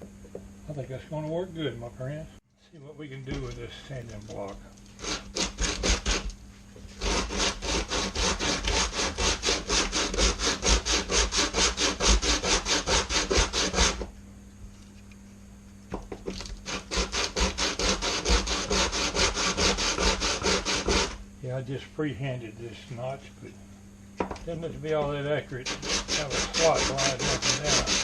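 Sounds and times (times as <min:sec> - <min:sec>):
sandpaper rubbing on wood: 0:05.0 - 0:06.3, 0:06.9 - 0:14.0, 0:16.7 - 0:21.2, 0:25.6 - 0:28.0.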